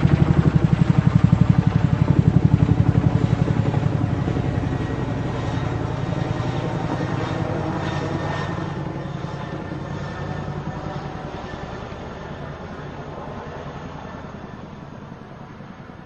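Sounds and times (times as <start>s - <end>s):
helicopter rotor beating: 0.0s - 16.0s.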